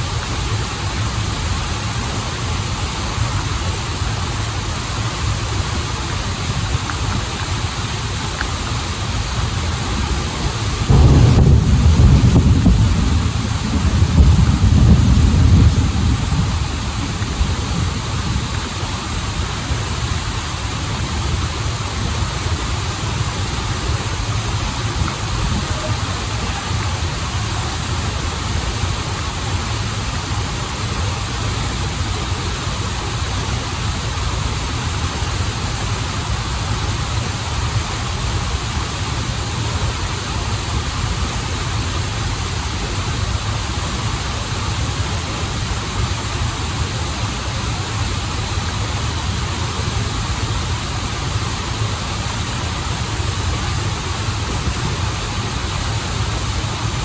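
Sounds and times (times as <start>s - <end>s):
waterfall and river rushing: 0.0s - 57.0s.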